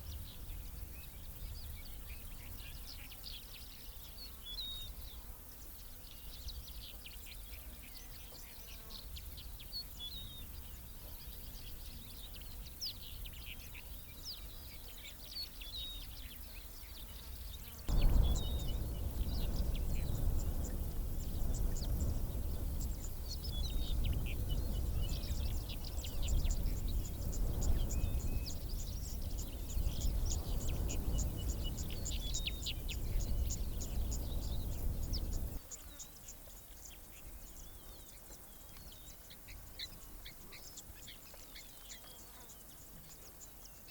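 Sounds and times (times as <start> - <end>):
wild birds chirping: 6.0 - 43.8
steady low rumbling: 17.9 - 35.6.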